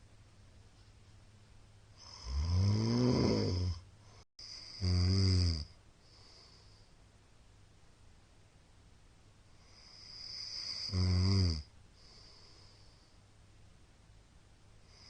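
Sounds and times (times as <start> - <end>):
man snoring: 2.0 - 3.8, 4.4 - 6.4, 9.7 - 12.4.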